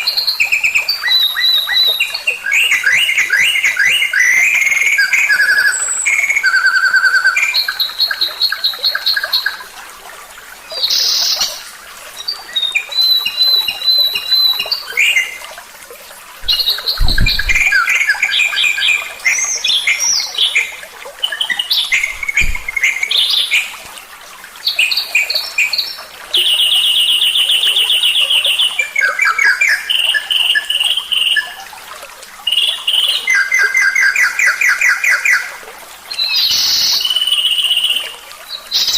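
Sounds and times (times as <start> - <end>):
songbirds singing: 10.5 - 15.5, 16.4 - 23.8, 36.1 - 38.9
low thump: 16.4 - 17.8, 22.0 - 22.8.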